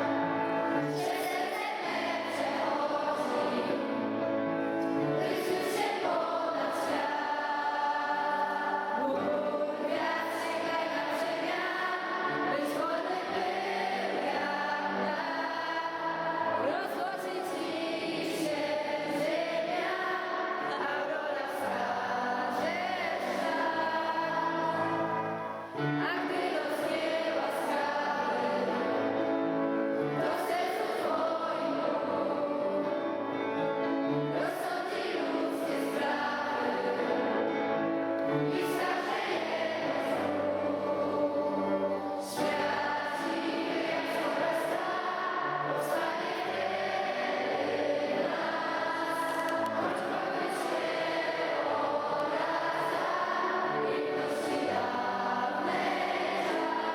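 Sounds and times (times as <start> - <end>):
choir-like sustained chords: 0.0 - 56.9.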